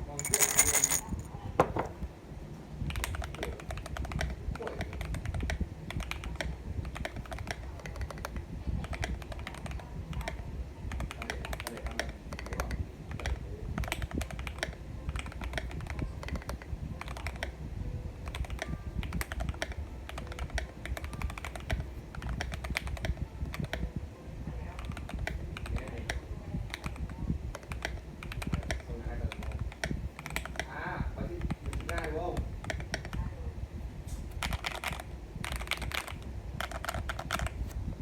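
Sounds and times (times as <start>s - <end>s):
fast typing on mechanical keyboard: 2.9s - 10.3s, 10.9s - 17.5s, 18.3s - 23.8s, 31.7s - 32.1s, 34.4s - 37.6s.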